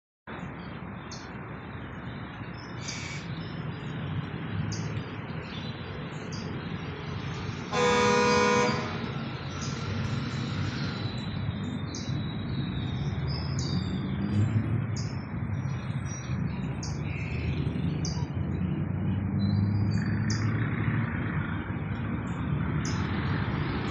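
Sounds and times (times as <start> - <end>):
birds chirping: 0.3 - 23.9
road traffic rumble: 0.3 - 23.9
car horn honk: 7.7 - 9.1.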